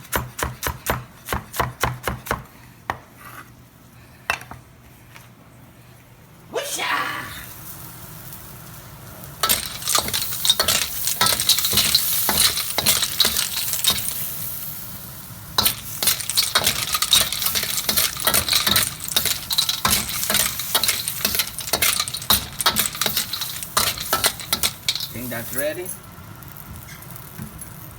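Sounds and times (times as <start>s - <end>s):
food sizzling in a pan: 6.8s - 27.9s
utensil and shells clinking on pan: 9.4s - 14.6s, 15.6s - 26.1s.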